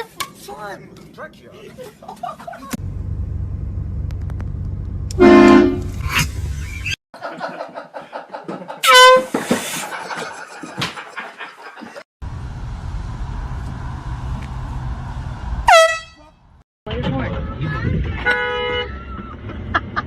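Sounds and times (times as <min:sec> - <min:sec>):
air horn blasts: 0:05.1 - 0:06.0, 0:08.8 - 0:09.4, 0:15.6 - 0:16.3, 0:18.2 - 0:19.0.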